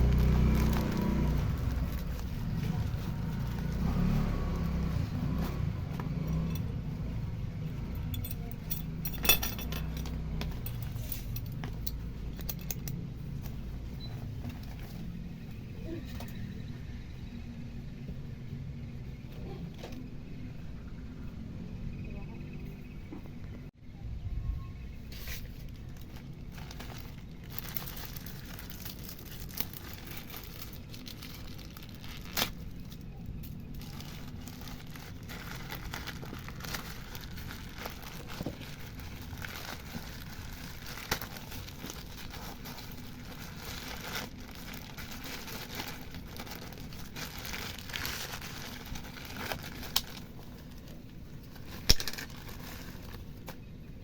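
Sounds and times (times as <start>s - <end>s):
packaging crinkling and tearing: 0.0s - 5.4s, 25.3s - 53.7s
clinks of small hard objects: 8.0s - 13.0s.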